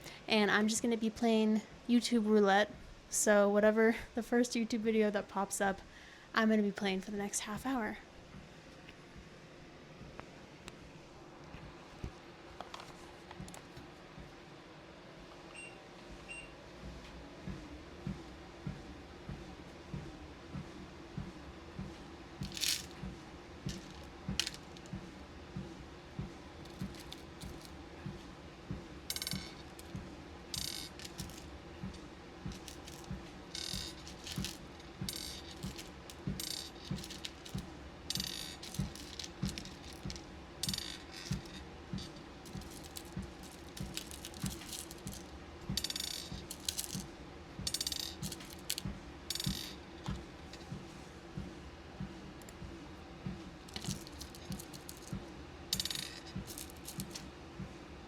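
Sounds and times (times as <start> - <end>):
walking pad hum: 7.6 - 58.0
soft footfalls on belt: 21.2 - 55.3
beads and pins clinking: 22.4 - 23.0, 23.6 - 25.0, 26.6 - 27.8, 29.1 - 50.7, 53.7 - 57.3.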